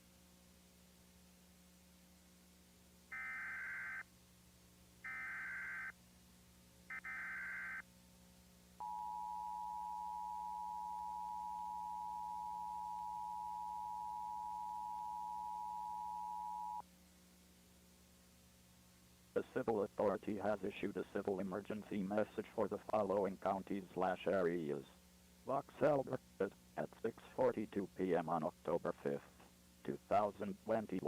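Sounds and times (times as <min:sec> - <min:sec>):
two-tone alert signal: 0:08.8 - 0:16.8.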